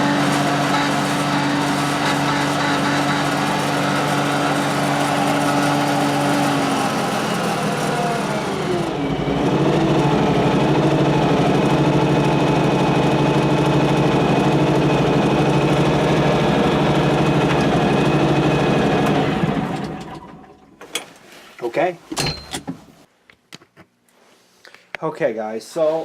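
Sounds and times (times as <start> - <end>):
lawn tractor engine running: 0.0 - 20.7.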